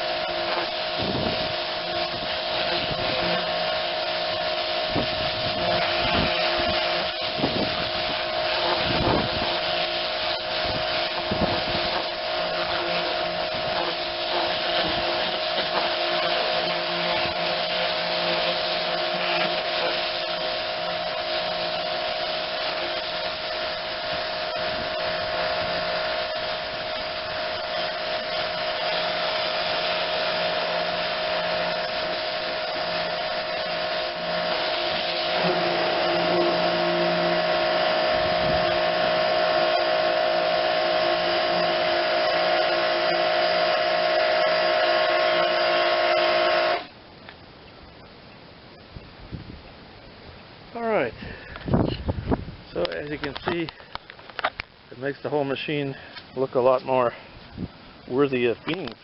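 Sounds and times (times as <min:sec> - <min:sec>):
pressure washer motor whine: 0:00.0 - 0:47.0
water jet spraying: 0:00.0 - 0:47.0.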